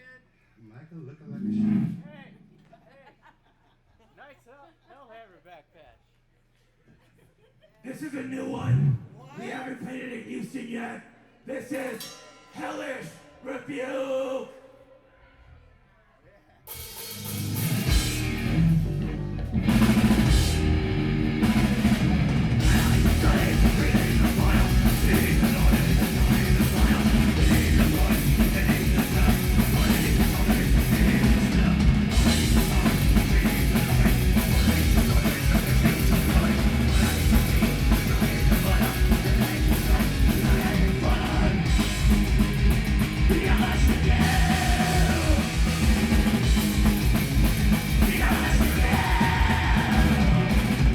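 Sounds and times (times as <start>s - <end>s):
bass guitar: 16.7s - 50.9s
distorted electric guitars: 16.7s - 50.9s
fast drumming: 16.7s - 50.9s.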